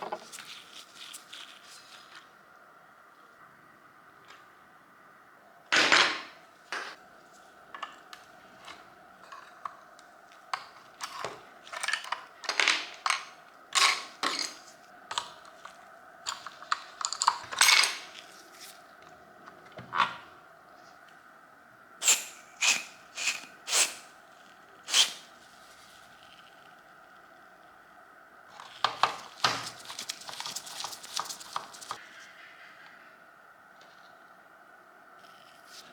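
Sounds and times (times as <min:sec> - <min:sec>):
faint steady hum: 0:00.0 - 0:35.9.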